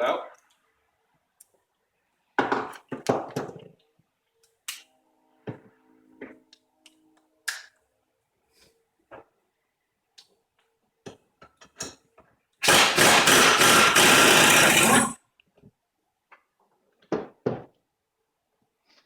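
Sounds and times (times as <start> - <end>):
burst of mechanical noise: 12.6 - 15.2.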